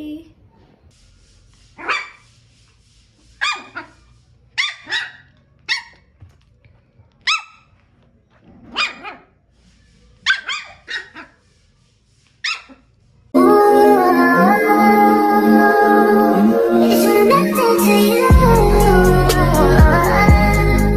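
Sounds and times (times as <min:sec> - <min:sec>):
dog barking: 0:01.8 - 0:02.2, 0:03.4 - 0:06.1, 0:07.2 - 0:07.7, 0:08.6 - 0:09.4, 0:10.2 - 0:11.4, 0:12.4 - 0:12.9.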